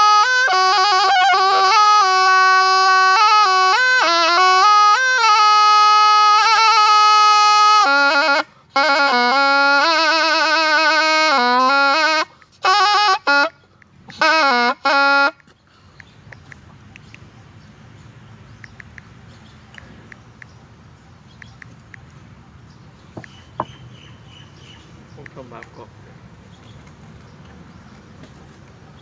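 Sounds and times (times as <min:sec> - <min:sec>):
reed oboe melody: 0:00.0 - 0:16.0
small clicks: 0:18.6 - 0:19.1.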